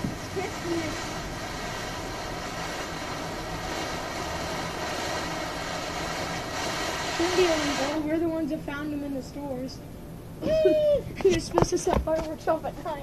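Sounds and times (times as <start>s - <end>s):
firework fountain hissing: 0.0s - 9.3s.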